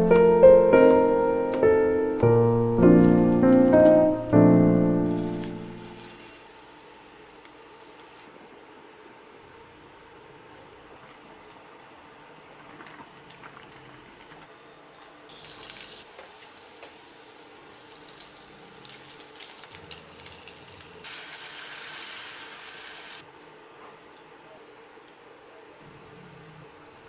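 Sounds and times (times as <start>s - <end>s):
loud kitchen hiss: 14.9s - 23.3s.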